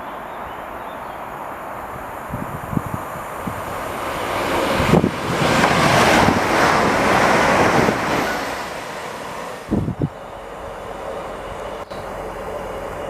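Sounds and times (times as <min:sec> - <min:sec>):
train passing: 0:00.0 - 0:13.0.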